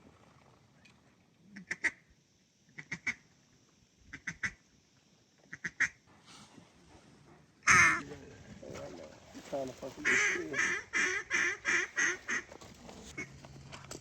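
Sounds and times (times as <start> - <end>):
duck quacking: 5.5 - 6.0, 7.6 - 8.1, 10.0 - 12.5.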